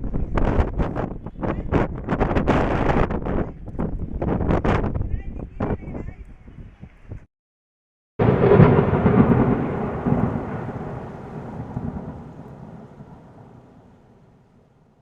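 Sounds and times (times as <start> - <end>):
rain: 8.2 - 15.0
thunderclap and rumble: 8.2 - 15.0.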